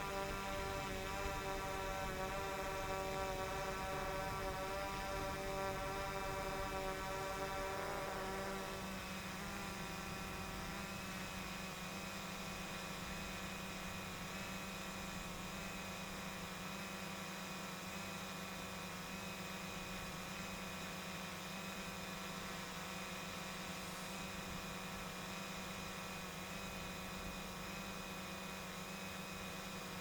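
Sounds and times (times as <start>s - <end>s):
drone propellers buzzing: 0.0s - 16.1s.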